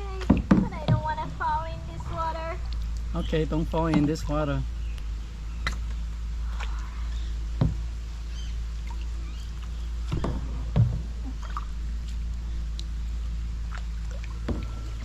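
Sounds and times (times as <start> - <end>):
paddles knocking against hull: 0.0 - 1.4, 3.0 - 4.4, 7.6 - 7.9, 9.6 - 12.3
steady low rumble: 0.0 - 15.0.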